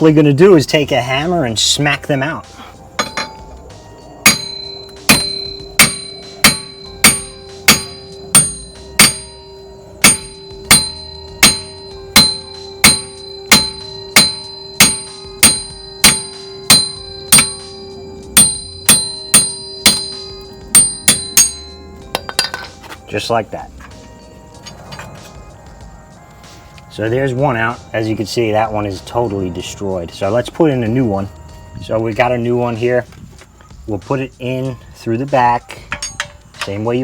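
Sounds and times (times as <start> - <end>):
hammer striking metal: 3.0 - 3.6, 4.2 - 22.9, 35.9 - 36.8
metal hub ringing: 3.0 - 25.6, 35.4 - 37.0.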